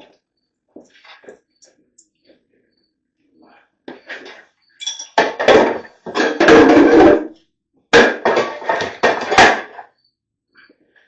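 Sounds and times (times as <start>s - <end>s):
hand tools clanking on metal: 4.8s - 7.2s.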